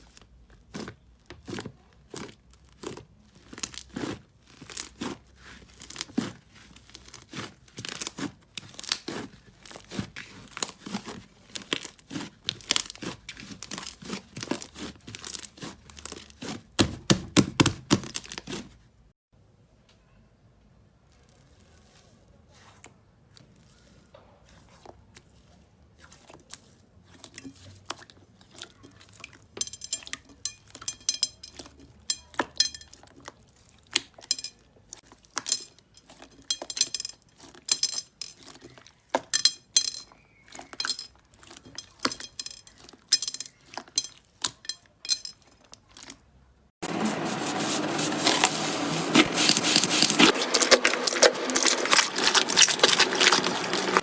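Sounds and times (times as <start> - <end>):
slime squeezed by hand crackling: 47.2 - 54.0.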